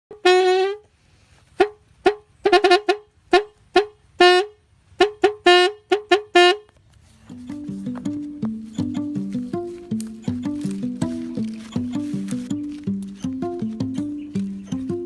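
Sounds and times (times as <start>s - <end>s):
handmade horn honking: 0.1s - 0.9s, 1.6s - 6.7s.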